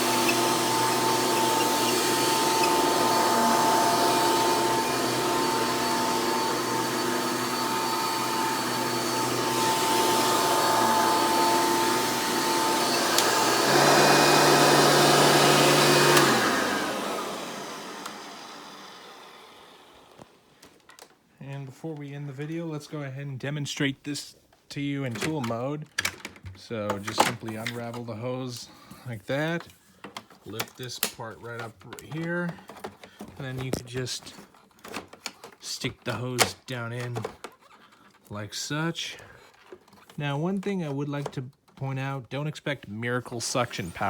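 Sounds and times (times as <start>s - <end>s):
upright vacuum motor whine: 0.0s - 20.4s.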